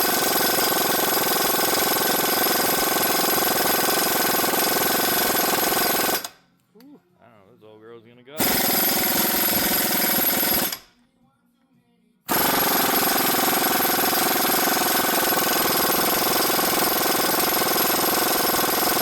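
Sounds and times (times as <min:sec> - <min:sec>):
impact wrench hammering: 0:08.4 - 0:10.9, 0:12.3 - 0:19.0.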